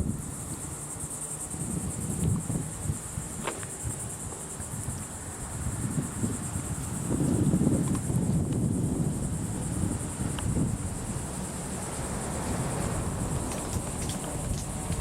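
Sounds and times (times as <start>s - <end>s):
insects trilling: 0.0s - 15.0s
wind rumbling on microphone: 0.0s - 15.0s.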